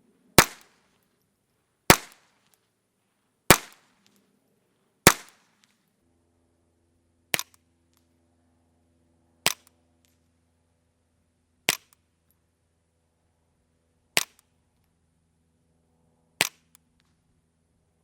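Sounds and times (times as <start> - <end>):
suppressed gunshots: 0.4 - 0.7, 1.9 - 2.2, 3.5 - 3.8, 5.0 - 5.4.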